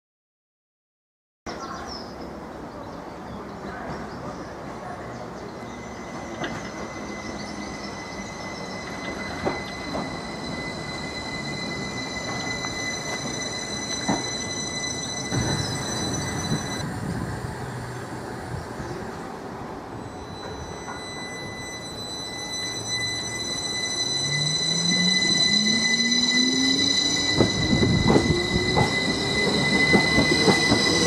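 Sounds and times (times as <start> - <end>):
train rumbling on rails: 1.5 - 31.0
high-pitched whine: 20.0 - 31.0.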